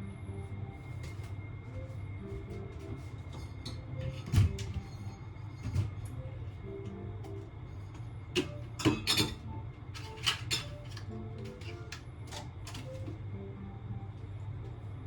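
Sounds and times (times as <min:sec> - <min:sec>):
background music with plucked notes: 0:00.0 - 0:15.0.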